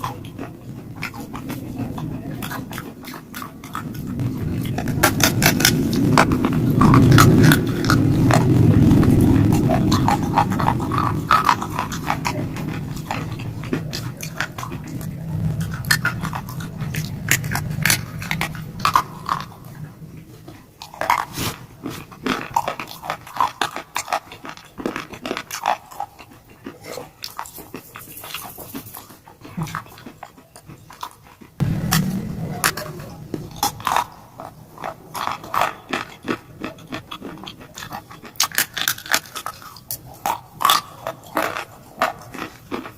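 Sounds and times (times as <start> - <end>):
chewing stone crunching: 0.0 - 42.9
low rumble: 0.2 - 20.6, 31.6 - 35.0.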